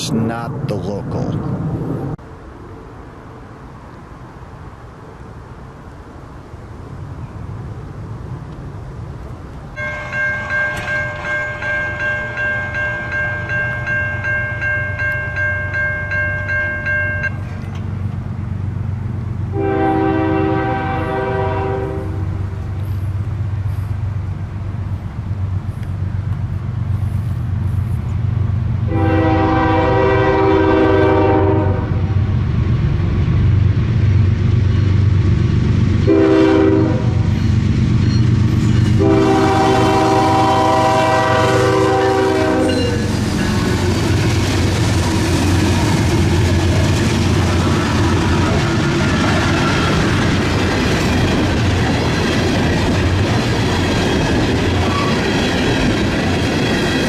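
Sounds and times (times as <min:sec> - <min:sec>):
diesel locomotive engines: 0:00.0 - 0:57.0
train wheels clattering on rails: 0:09.8 - 0:18.2, 0:42.4 - 0:57.0
train horn blasts: 0:19.5 - 0:22.4, 0:28.9 - 0:32.2, 0:36.1 - 0:37.4, 0:39.0 - 0:43.1.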